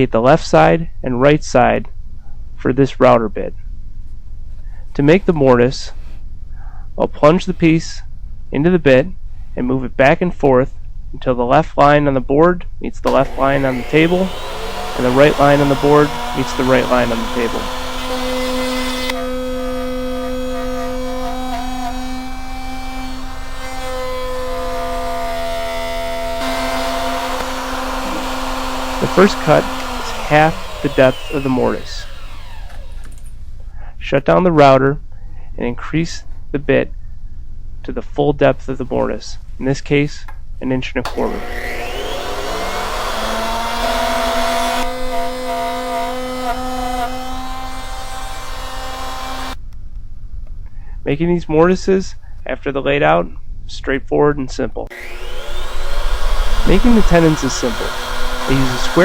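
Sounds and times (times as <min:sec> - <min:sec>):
router bit cutting wood: 0:13.1 - 0:33.3, 0:41.1 - 0:49.6, 0:54.9 - 0:59.0
router high whine: 0:13.1 - 0:33.3, 0:41.1 - 0:49.6, 0:54.9 - 0:59.0.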